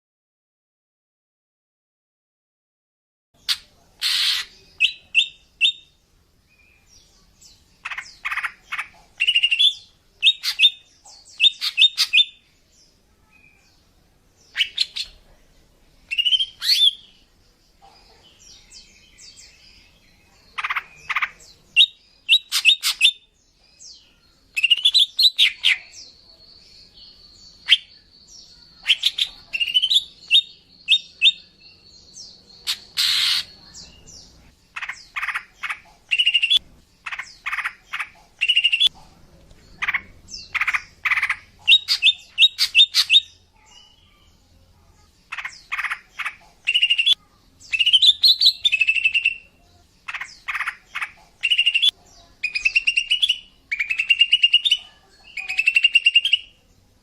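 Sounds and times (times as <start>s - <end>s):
bird chirping and whistling: 36.1s - 36.6s.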